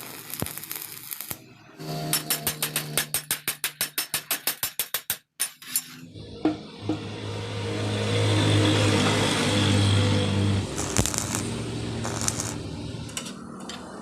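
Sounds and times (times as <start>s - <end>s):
welding arc hissing: 0.0s - 1.5s, 9.4s - 13.2s.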